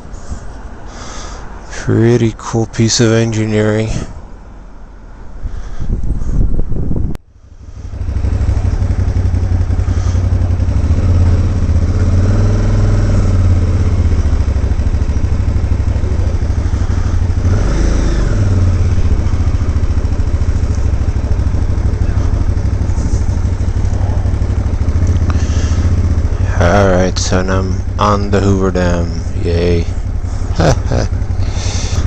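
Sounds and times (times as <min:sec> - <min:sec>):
motorcycle engine running: 0:06.8 - 0:32.0.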